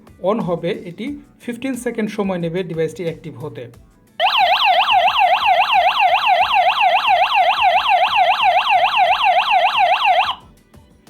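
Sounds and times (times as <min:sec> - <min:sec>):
electronic alarm siren warbling: 0:04.2 - 0:10.4.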